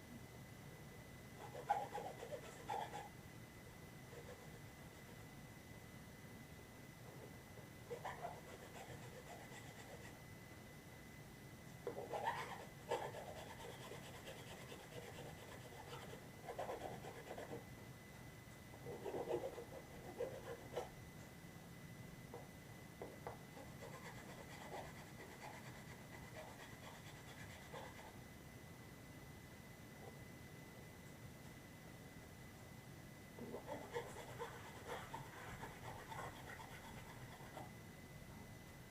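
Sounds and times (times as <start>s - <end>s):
scratching and rubbing on plastic: 7.9s - 10.2s, 33.4s - 37.7s.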